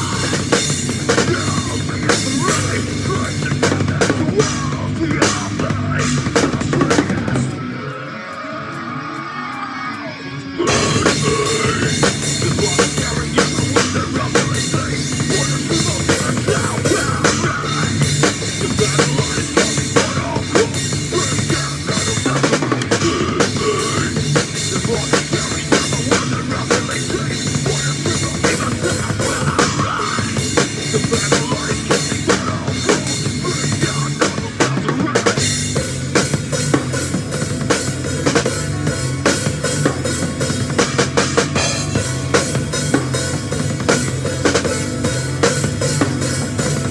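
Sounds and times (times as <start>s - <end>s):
drum kit rock beat: 0.0s - 46.9s
held low bass notes: 10.7s - 46.9s.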